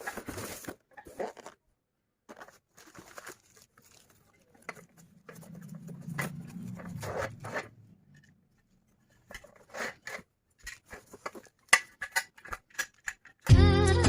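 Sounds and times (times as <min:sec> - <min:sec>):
rasping and clicking handling noises: 0:02.3 - 0:13.5
low hum: 0:04.9 - 0:08.6.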